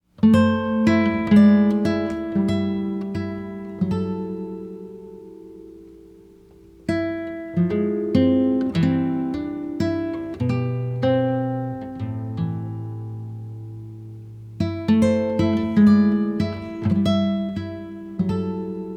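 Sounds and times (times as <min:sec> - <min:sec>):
acoustic guitar plucked notes: 0:00.2 - 0:18.9.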